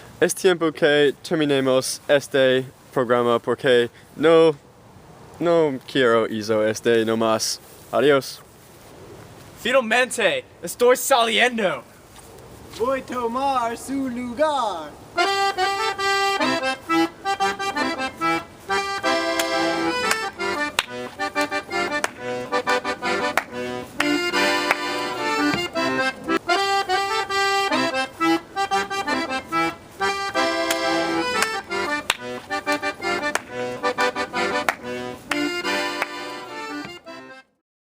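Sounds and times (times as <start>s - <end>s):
lively accordion music: 12.8s - 37.6s.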